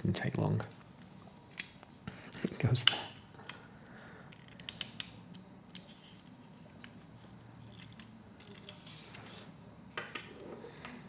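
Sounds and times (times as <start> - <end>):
plastic pieces clicking together: 4.3 - 5.9.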